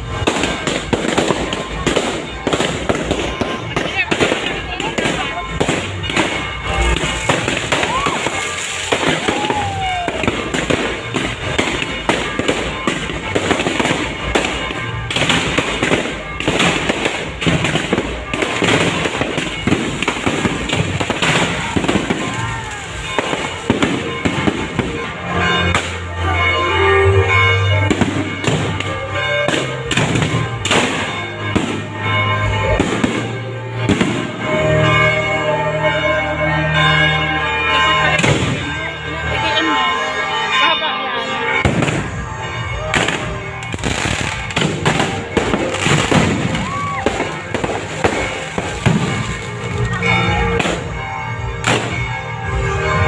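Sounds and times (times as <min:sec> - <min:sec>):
fireworks bangs and crackles: 0:00.0 - 0:40.6, 0:41.5 - 0:53.0
music with heavy bass: 0:00.0 - 0:53.0
falling firework whistle: 0:06.1 - 0:11.3, 0:43.0 - 0:49.3.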